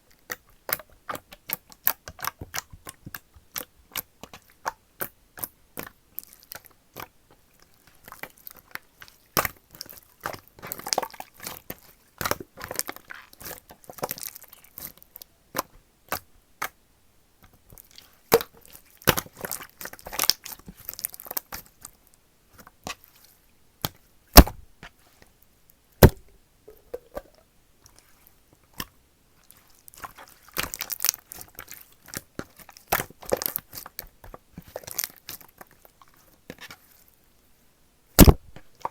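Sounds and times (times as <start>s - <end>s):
slime popping and clicking: 24.4s - 24.6s, 38.2s - 38.5s.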